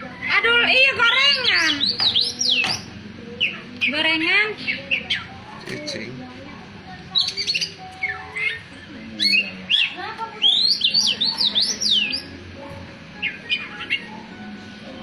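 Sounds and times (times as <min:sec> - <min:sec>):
bird chirping and whistling: 0:01.1 - 0:04.0, 0:09.2 - 0:12.4.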